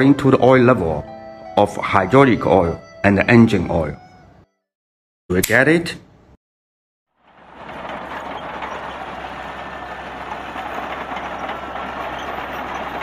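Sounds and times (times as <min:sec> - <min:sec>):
excavator diesel engine running: 0:07.2 - 0:13.0.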